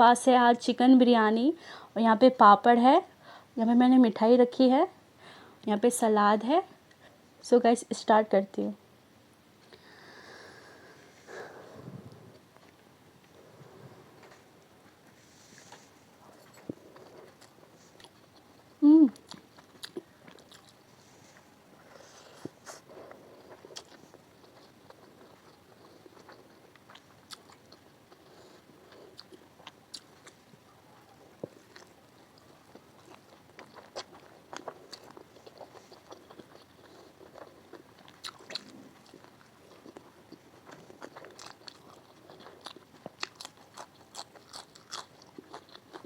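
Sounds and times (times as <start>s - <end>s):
person chewing food: 9.7s - 46.0s.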